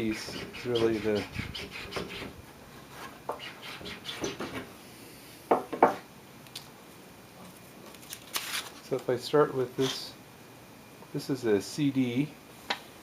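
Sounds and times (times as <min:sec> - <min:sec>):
sharp knocks on wood: 0:05.5 - 0:06.0.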